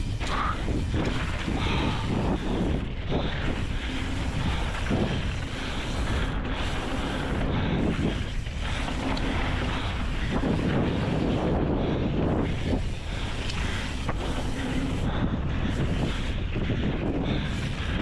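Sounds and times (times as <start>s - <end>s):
bike knocks and rattles: 0.0s - 18.0s
tyres rushing on dirt: 0.0s - 18.0s
wind buffeting microphone: 0.0s - 18.0s.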